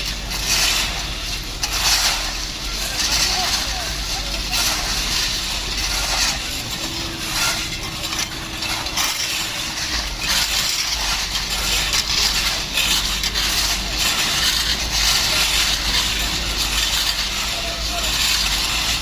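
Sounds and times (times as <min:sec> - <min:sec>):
crunching and scraping: 0:00.0 - 0:19.0
low rumble of machinery: 0:00.0 - 0:19.0.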